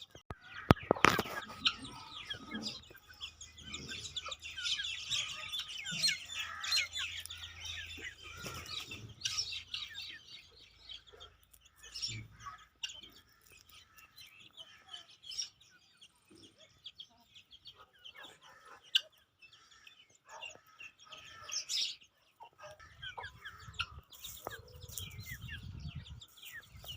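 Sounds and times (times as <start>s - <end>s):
chickens clucking and chirping: 0.0s - 26.9s.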